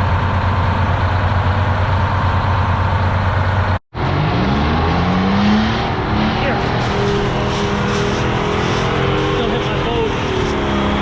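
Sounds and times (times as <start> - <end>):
truck diesel engine revving: 2.3 - 11.0.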